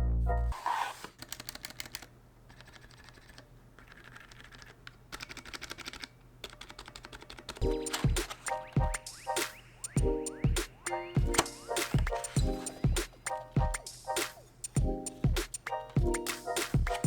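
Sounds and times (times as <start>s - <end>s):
mechanical keyboard clicking: 1.2s - 8.7s
background music with a beat: 7.6s - 17.0s.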